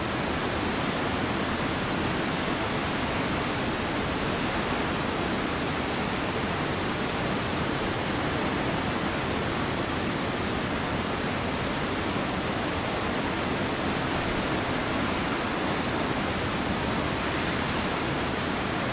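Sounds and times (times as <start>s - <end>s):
waterfall roaring: 0.0s - 18.9s.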